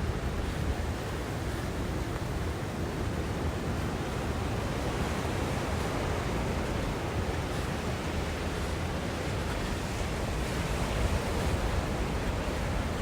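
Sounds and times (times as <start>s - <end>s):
wind rumbling on microphone: 0.0s - 13.0s.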